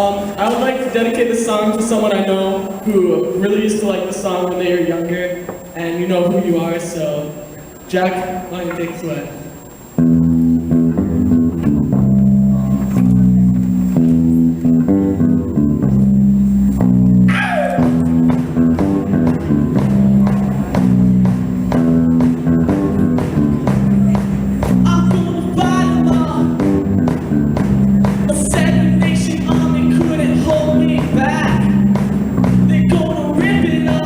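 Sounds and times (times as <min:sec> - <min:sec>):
bass guitar riff: 0:09.9 - 0:34.0
live rock band playing: 0:10.0 - 0:34.0.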